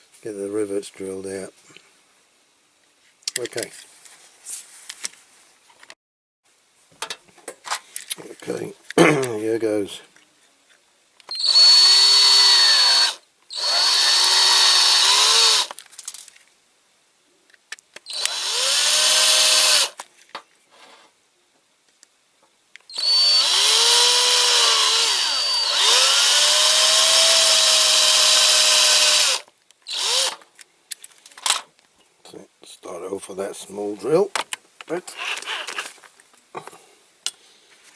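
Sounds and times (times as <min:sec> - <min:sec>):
power drill drilling into metal: 0:11.3 - 0:15.8, 0:18.1 - 0:20.0, 0:22.9 - 0:30.4.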